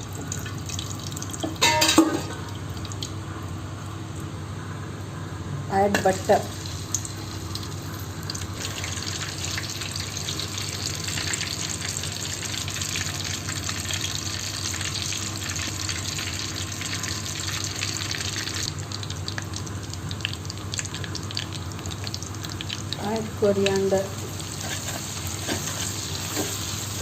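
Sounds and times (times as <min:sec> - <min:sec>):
butter sizzling in a frying pan: 0:06.3 - 0:27.0.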